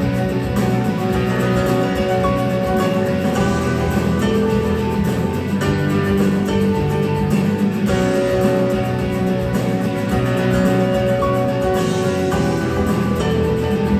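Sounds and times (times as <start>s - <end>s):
instrumental music with held chords: 0.0s - 13.9s.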